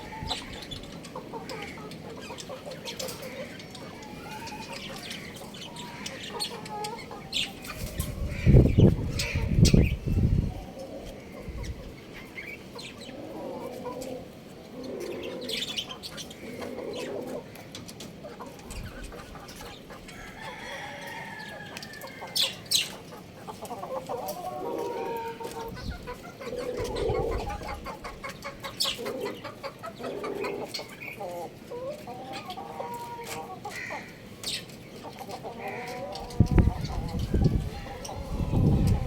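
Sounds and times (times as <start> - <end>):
rooster clucking: 18.3 - 34.2.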